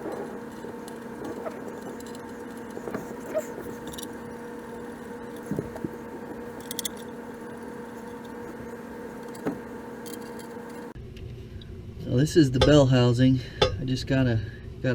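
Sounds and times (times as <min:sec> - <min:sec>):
metal tools clinking: 0:00.0 - 0:11.0
steady electrical hum: 0:00.0 - 0:14.9.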